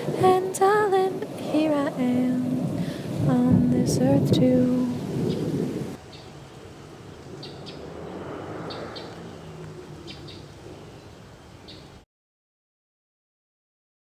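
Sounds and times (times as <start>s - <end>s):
soft steady hiss: 0.0s - 12.0s
birds chirping: 4.9s - 12.0s.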